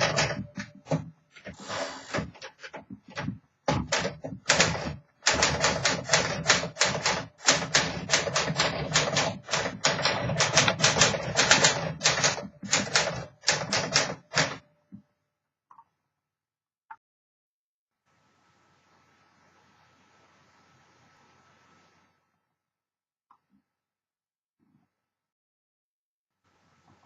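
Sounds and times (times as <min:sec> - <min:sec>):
typewriter key strikes: 0:00.0 - 0:00.9, 0:03.7 - 0:14.6.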